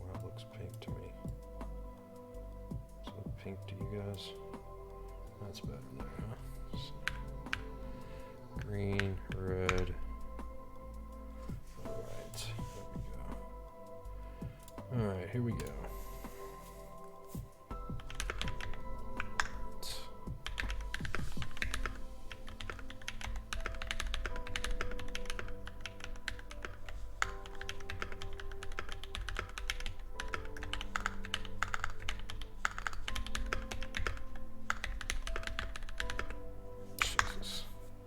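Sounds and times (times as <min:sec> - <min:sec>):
mechanical keyboard typing: 0:08.6 - 0:10.1, 0:18.0 - 0:36.4.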